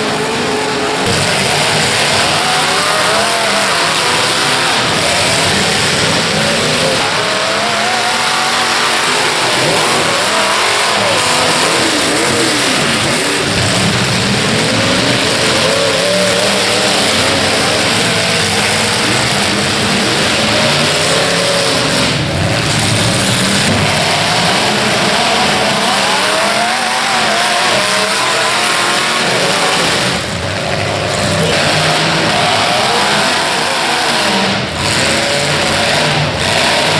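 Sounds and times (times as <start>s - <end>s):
car engines revving hard: 0.0s - 36.9s.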